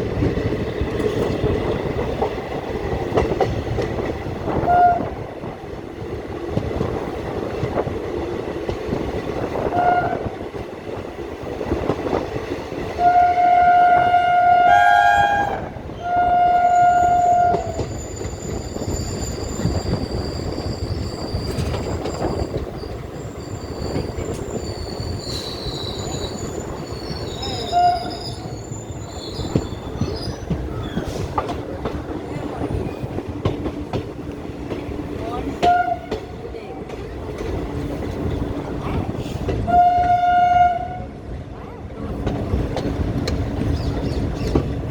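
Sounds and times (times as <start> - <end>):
train rumbling: 0.0 - 44.9
train horn: 4.5 - 5.2, 9.6 - 10.3, 13.0 - 17.9, 27.6 - 28.4, 35.6 - 36.2, 39.6 - 41.1
wheel squeal: 16.9 - 31.3.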